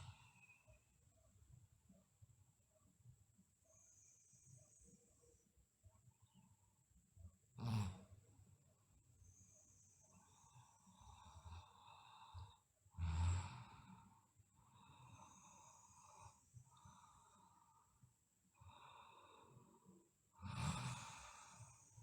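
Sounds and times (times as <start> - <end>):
soft whistly breaths: 0.0 - 1.5, 3.5 - 5.5, 9.2 - 12.7
girl snoring: 20.4 - 22.0.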